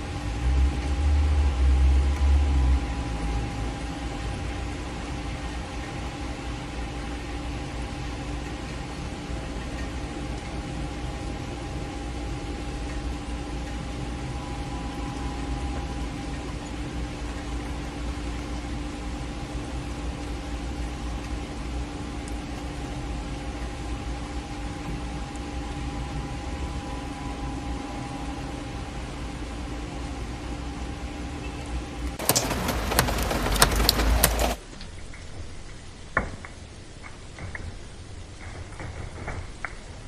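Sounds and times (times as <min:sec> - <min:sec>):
steady multi-tone hum: 0:00.0 - 0:34.8
steady rain hiss: 0:00.0 - 0:40.0.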